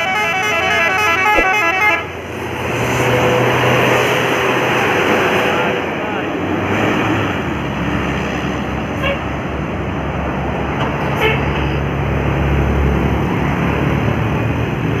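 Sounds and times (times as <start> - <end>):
short horn toots: 0.0 - 2.1
heavy vehicle engine noise: 0.0 - 15.0
traffic passing: 0.0 - 15.0.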